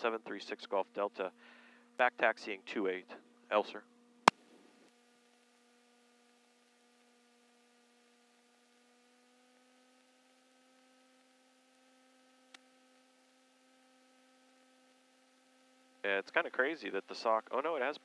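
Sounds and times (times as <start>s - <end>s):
faint electrical hum: 0.0s - 18.0s
faint click: 12.5s - 12.7s.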